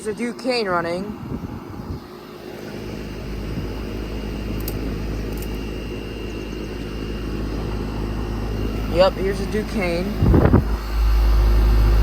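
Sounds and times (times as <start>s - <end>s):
air conditioner unit humming: 0.0s - 12.0s.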